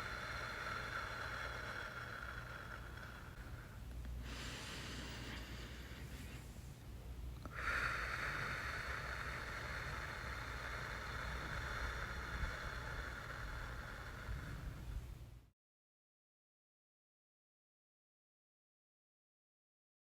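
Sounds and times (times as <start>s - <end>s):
person breathing in deeply: 0.0s - 6.7s, 7.4s - 15.2s.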